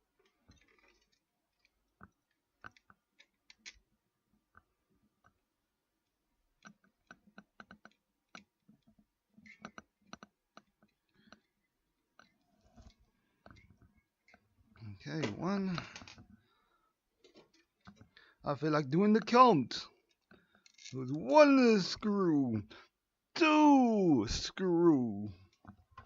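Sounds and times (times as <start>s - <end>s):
small metal screws clicking: 20.1s - 21.0s.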